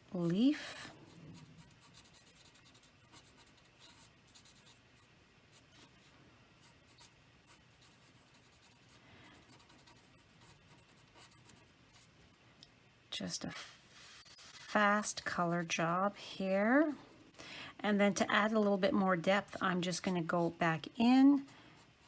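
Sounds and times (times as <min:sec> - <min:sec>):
marker scratching on cardstock: 0:01.4 - 0:04.8.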